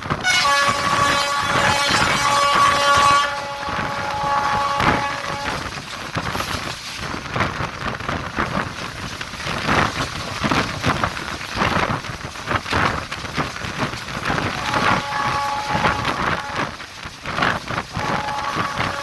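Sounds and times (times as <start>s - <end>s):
train rushing rumble: 0.0s - 19.0s
wheels clattering on track: 0.0s - 19.0s.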